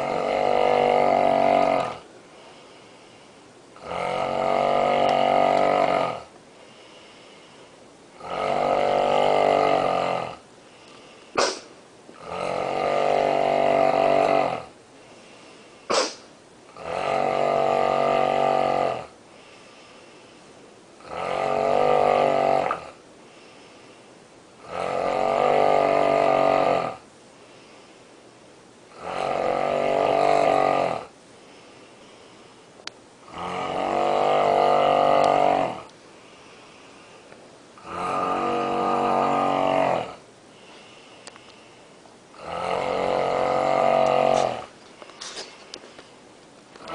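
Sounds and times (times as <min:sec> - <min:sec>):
woman snoring: 0:00.0 - 0:02.0, 0:03.8 - 0:06.3, 0:08.2 - 0:11.0, 0:12.2 - 0:14.7, 0:16.8 - 0:19.1, 0:28.9 - 0:31.1, 0:33.3 - 0:35.9, 0:37.8 - 0:40.2, 0:42.4 - 0:44.7
breathing: 0:02.2 - 0:03.6, 0:06.5 - 0:07.9, 0:10.6 - 0:11.4, 0:15.0 - 0:16.2, 0:19.3 - 0:20.7, 0:23.2 - 0:24.2, 0:27.2 - 0:28.3, 0:31.3 - 0:32.9, 0:36.0 - 0:37.4, 0:40.5 - 0:42.1, 0:44.8 - 0:46.3.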